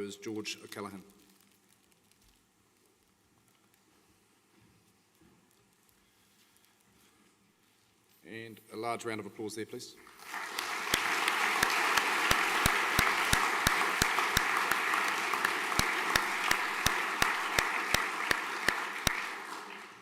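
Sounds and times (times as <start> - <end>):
audience applauding: 10.1 - 20.0
sharp loud clap: 10.2 - 20.0.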